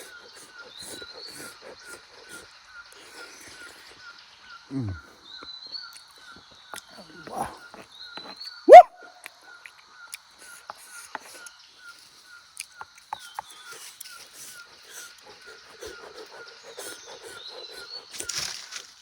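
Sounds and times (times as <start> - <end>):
animal squealing: 8.7 - 8.9.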